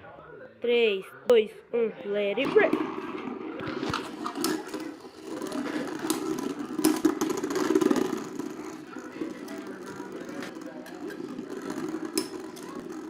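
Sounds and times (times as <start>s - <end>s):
spinning tops whirring: 2.4s - 13.0s
spinning tops clacking together: 3.8s - 13.0s.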